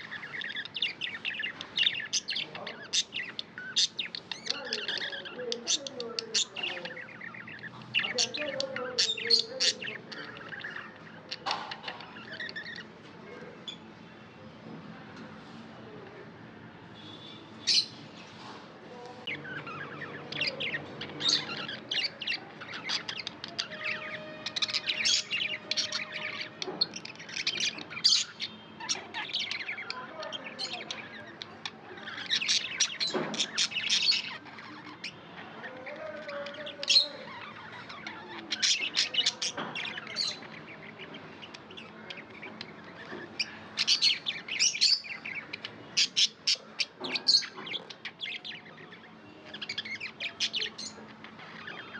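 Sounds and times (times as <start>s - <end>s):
budgerigars chirping and squawking: 0.0s - 13.0s, 17.0s - 51.9s.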